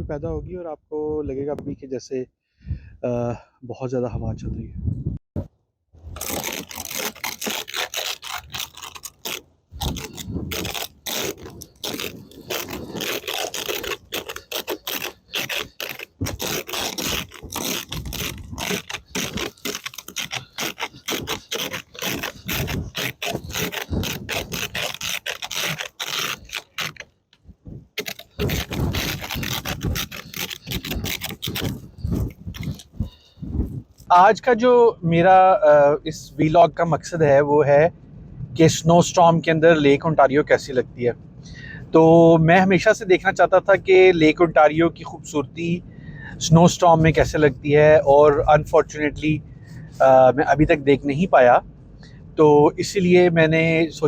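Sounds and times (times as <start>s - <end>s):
scraping ice off a car: 6.1s - 27.1s, 27.9s - 33.2s.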